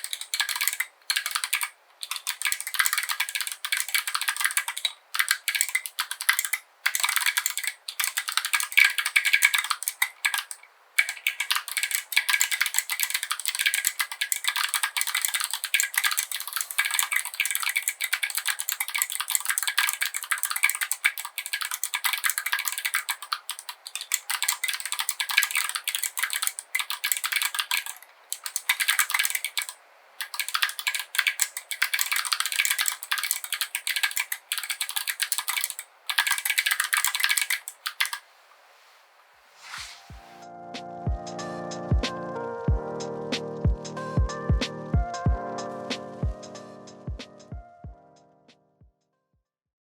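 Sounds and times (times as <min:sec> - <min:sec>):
typing on mechanical keyboard: 0:00.0 - 0:38.2.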